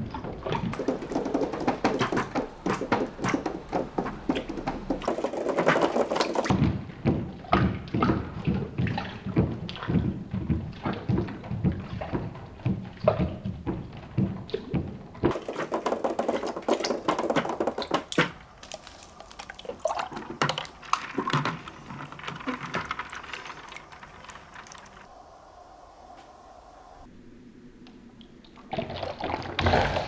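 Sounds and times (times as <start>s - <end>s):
marbles splashing into water: 0.8s - 6.5s, 15.3s - 25.1s
marbles rolling and clattering: 0.8s - 6.6s, 15.3s - 25.1s.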